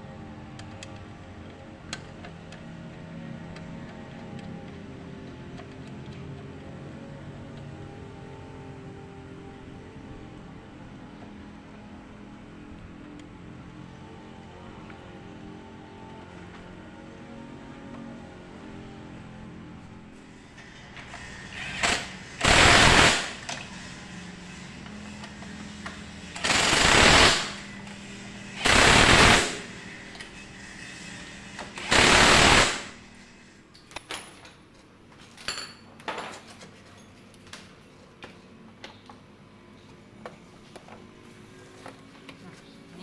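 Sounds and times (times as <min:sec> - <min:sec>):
air tool bursts: 0:21.1 - 0:23.6, 0:26.3 - 0:27.7, 0:28.6 - 0:29.8, 0:31.6 - 0:33.0.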